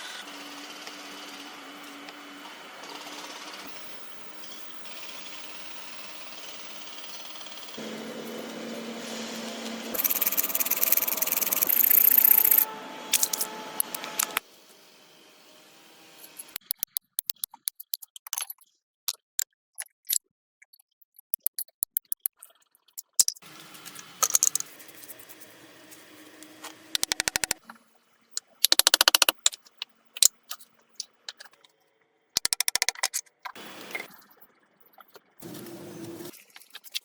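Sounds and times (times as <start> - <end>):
rapid clicking: 10.0 - 12.7, 27.0 - 27.6, 28.6 - 29.6, 32.4 - 33.1
sharp clicks and knocks: 27.0 - 27.6, 28.4 - 31.6, 32.4 - 33.3.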